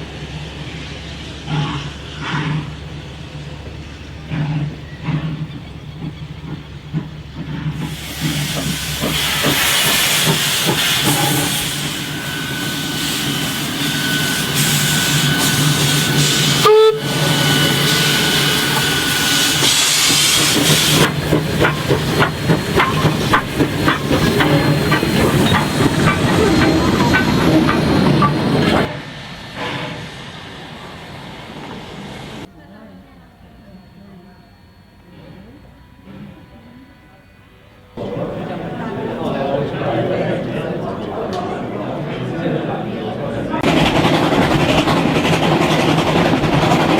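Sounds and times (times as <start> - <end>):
steam locomotive hissing: 0.0 - 46.9
rhythmic locomotive beat: 2.7 - 28.9, 38.0 - 46.9.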